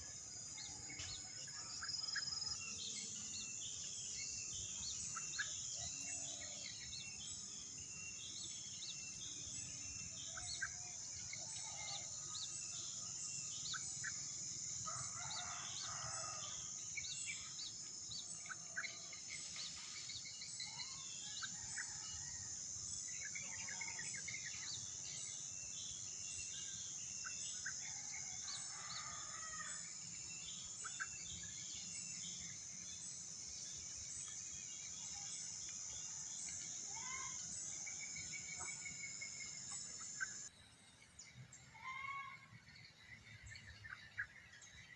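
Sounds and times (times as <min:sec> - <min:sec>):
high-pitched insect chorus: 0:00.0 - 0:44.9
small birds chirping: 0:00.0 - 0:44.9
distant rooster crowing: 0:14.9 - 0:16.6, 0:28.3 - 0:29.8.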